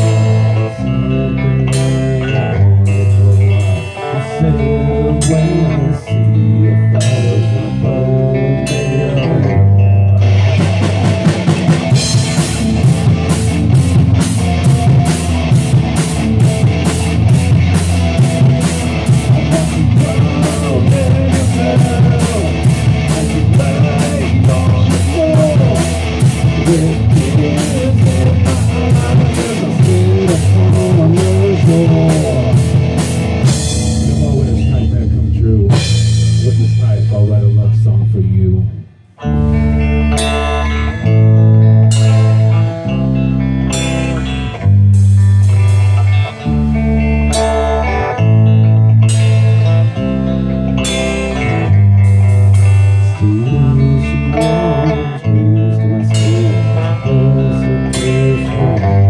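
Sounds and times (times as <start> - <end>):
bass line: 0.0 - 59.0
electric guitar: 0.0 - 59.0
rock band playing: 0.0 - 59.0
drum kit beat: 10.2 - 38.5, 41.8 - 42.7, 43.7 - 47.8, 49.0 - 49.9, 50.8 - 54.8, 56.1 - 57.4.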